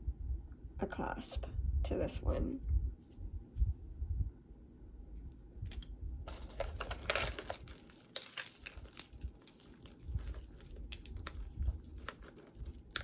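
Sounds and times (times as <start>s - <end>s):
metal chains jingling: 6.3s - 13.0s.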